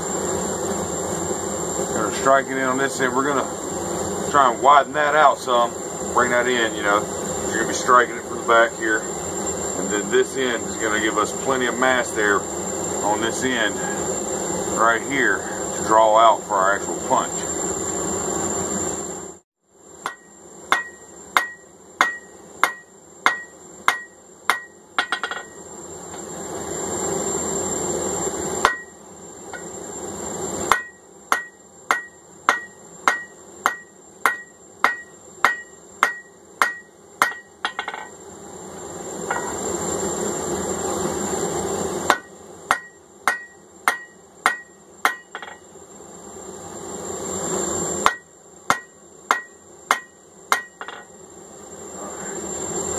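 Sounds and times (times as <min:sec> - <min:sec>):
hammer striking steel on anvil: 0:20.0 - 0:25.6, 0:28.6 - 0:29.7, 0:30.7 - 0:38.1, 0:42.1 - 0:45.6, 0:48.0 - 0:51.1.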